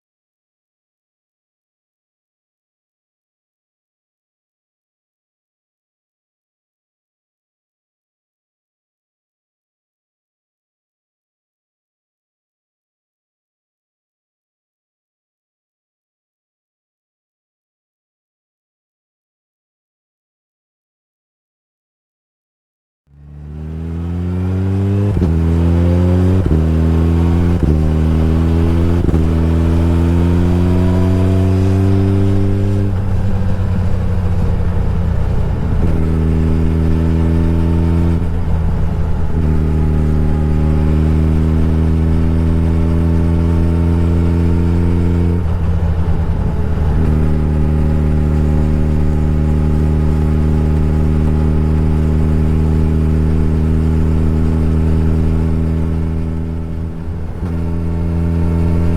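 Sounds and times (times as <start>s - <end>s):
motorcycle engine pulling away: 23.1s - 58.9s.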